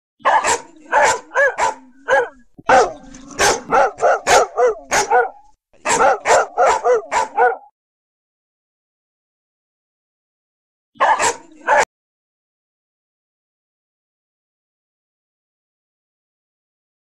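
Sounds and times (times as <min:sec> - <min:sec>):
dog barking: 0:00.2 - 0:07.7, 0:11.0 - 0:11.9.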